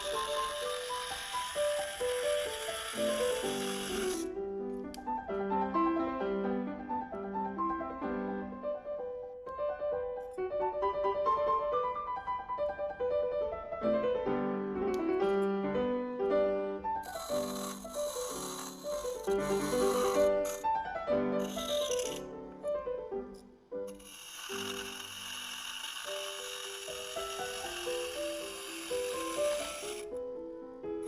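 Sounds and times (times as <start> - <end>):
loud steady machine hiss: 0.0 - 4.3, 17.0 - 20.7, 21.4 - 22.2, 23.9 - 30.2
solo piano playing: 3.0 - 17.0, 18.8 - 23.9, 27.3 - 31.0.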